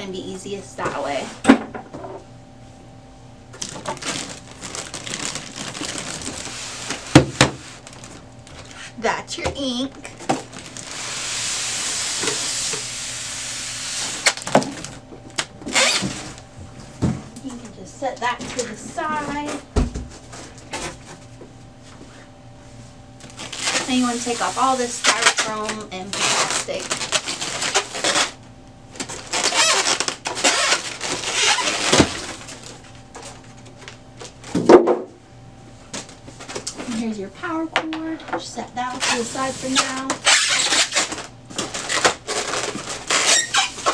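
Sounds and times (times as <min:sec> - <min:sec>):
packaging rustling: 0:03.6 - 0:08.9, 0:10.0 - 0:12.9, 0:13.9 - 0:16.9, 0:23.2 - 0:34.6, 0:38.9 - 0:43.9
plastic wrap crinkling: 0:03.6 - 0:08.9, 0:09.6 - 0:12.9, 0:13.7 - 0:16.5, 0:23.2 - 0:34.6, 0:38.9 - 0:43.9.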